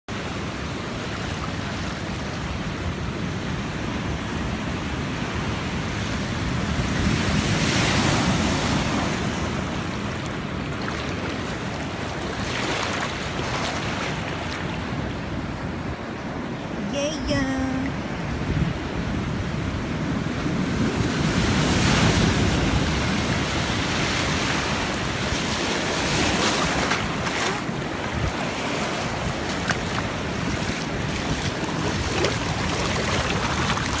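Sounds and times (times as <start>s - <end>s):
waves breaking: 0.2s - 34.0s
wind buffeting microphone: 18.0s - 34.0s.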